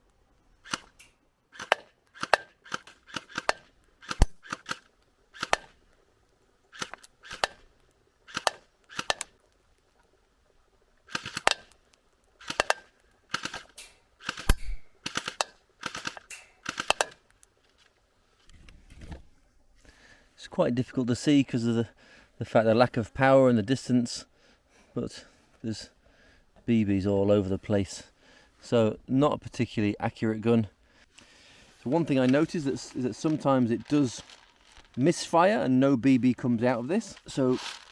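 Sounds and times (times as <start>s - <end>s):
airsoft gun firing clacks: 0.6s - 5.8s, 6.7s - 7.7s, 8.3s - 9.4s, 11.1s - 11.8s, 12.4s - 17.3s.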